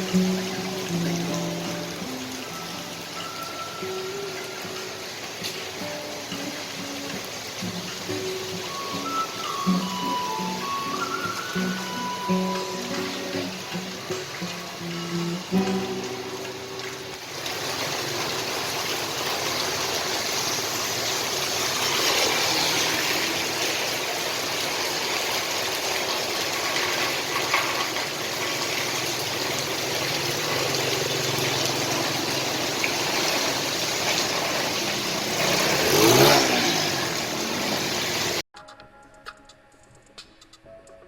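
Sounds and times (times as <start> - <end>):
heavy rain on a street: 0.0 - 38.4
traffic engines running: 0.0 - 38.4
vehicle passing close by: 17.5 - 24.2, 28.8 - 38.4.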